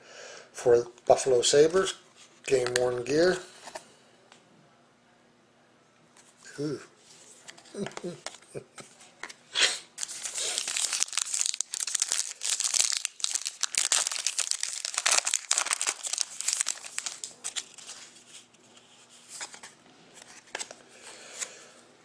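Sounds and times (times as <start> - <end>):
wrapper ripping: 10.0 - 18.2
wrapper crinkling: 10.0 - 18.5.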